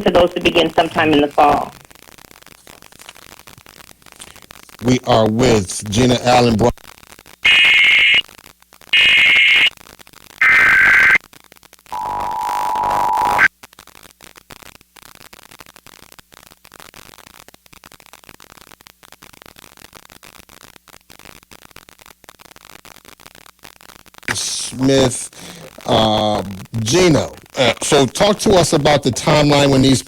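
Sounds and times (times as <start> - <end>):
faint hiss: 0.1 - 6.8, 24.3 - 30.0
warbling data bursts: 7.4 - 8.2, 9.0 - 9.7, 10.4 - 11.2, 11.9 - 13.5
steady attention signal tone: 11.9 - 13.5.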